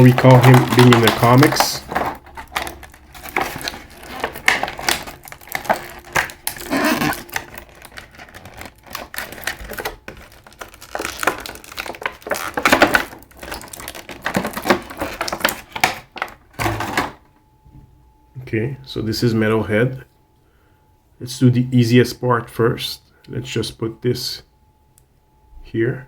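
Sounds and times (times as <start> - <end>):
packaging rustling: 0.0 - 17.2
plastic parts clicking and tapping: 0.0 - 17.2.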